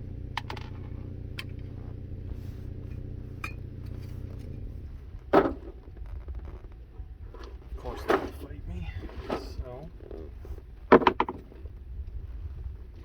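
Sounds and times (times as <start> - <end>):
low hum: 0.0 - 10.8
metal clunk: 0.3 - 6.0.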